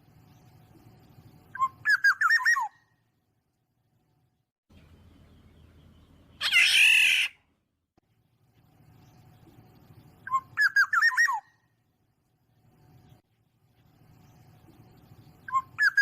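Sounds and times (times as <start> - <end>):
fluty whistled bird notes: 1.5 - 2.8, 10.2 - 11.6, 15.0 - 16.0
harsh bird squawk: 1.6 - 2.8, 6.4 - 7.4, 10.2 - 11.6, 15.5 - 16.0.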